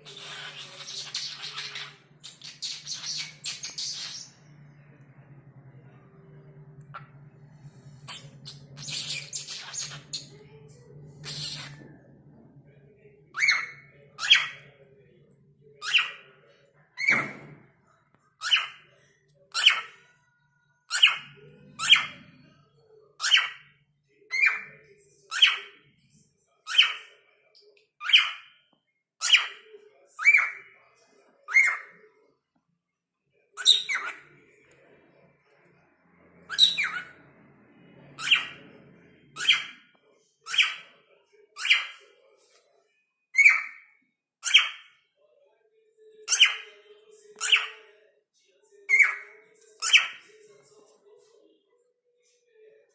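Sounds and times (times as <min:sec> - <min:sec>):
cockatiel calling: 0:00.0 - 0:04.3, 0:08.1 - 0:10.3, 0:11.2 - 0:11.8, 0:36.5 - 0:37.2.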